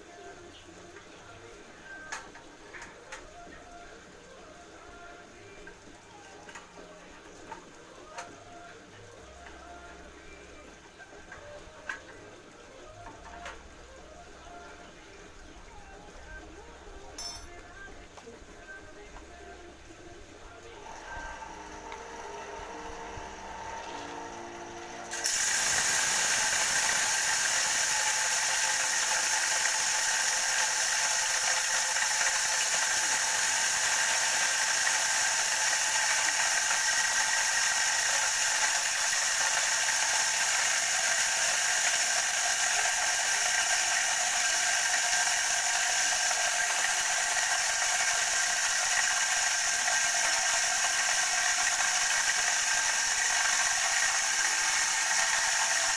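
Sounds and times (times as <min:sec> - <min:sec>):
grinder motor whirring: 0:20.7 - 0:55.9.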